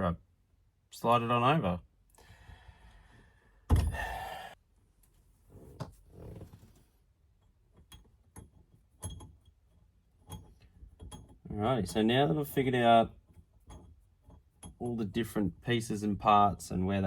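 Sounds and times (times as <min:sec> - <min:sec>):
metal parts clicking and tapping: 0:07.4 - 0:15.1.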